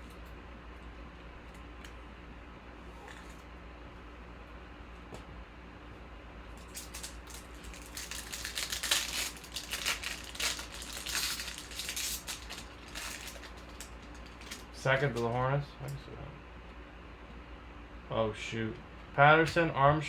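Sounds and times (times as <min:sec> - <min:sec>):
foil wrapper crinkling: 0:06.6 - 0:15.3.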